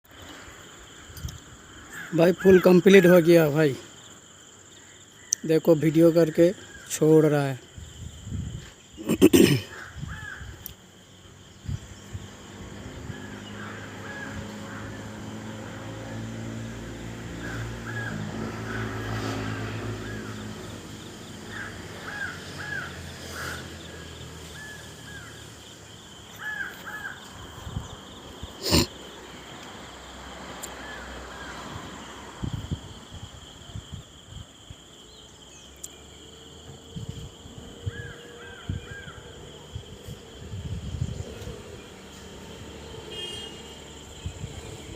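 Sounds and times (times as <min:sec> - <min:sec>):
insects trilling: 0:00.0 - 0:44.9
crows cawing: 0:09.7 - 0:10.6, 0:13.1 - 0:15.1, 0:17.4 - 0:20.5, 0:21.4 - 0:25.4, 0:26.3 - 0:27.4, 0:37.9 - 0:39.2.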